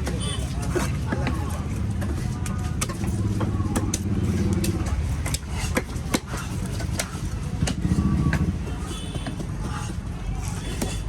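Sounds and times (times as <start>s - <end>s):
vehicle engine running: 1.3s - 10.4s.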